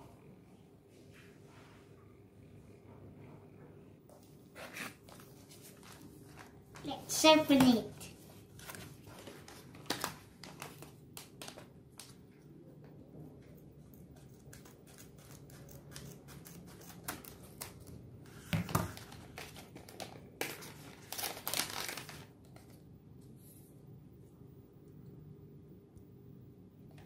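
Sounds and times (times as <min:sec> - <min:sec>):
packaging crinkling and tearing: 0:08.5 - 0:12.2, 0:18.8 - 0:22.8.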